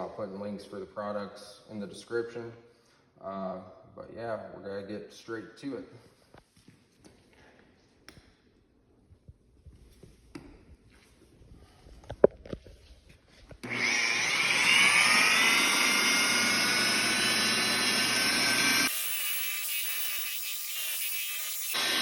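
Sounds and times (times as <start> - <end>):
electric polisher whining: 13.6 - 22.0.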